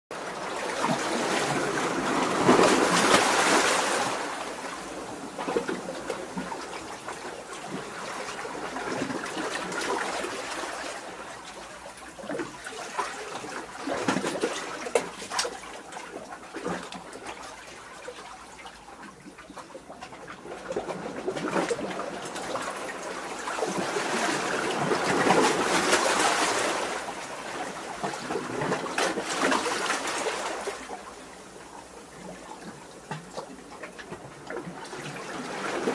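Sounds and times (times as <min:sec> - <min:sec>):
waves splashing among rocks: 0:00.2 - 0:11.4, 0:21.0 - 0:31.3.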